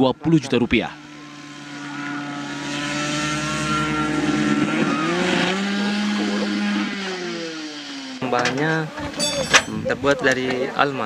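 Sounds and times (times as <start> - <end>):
small engine running steadily: 0.0 - 11.0.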